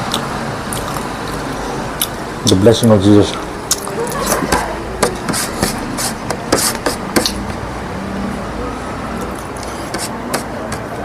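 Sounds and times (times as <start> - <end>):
chewing crunches: 0.1 - 2.2.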